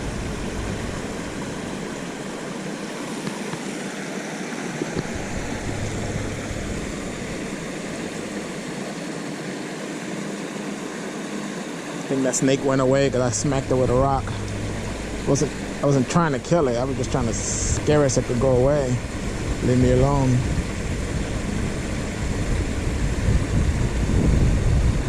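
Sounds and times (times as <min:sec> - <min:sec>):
low rumble: 0:00.0 - 0:02.5, 0:12.6 - 0:25.0
water rushing over spillway: 0:00.0 - 0:25.0.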